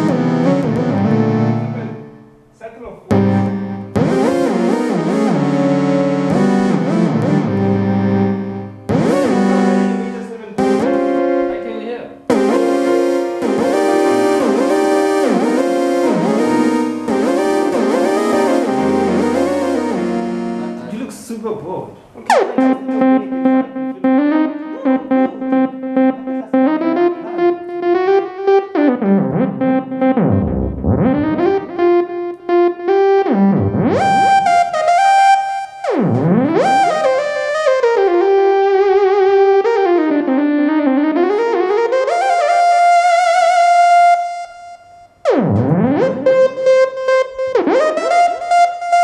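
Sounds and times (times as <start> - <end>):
synthesizer melody: 0.0 - 2.5, 3.1 - 21.2, 22.3 - 49.0
falling synth pitch sweeps: 12.3 - 20.9.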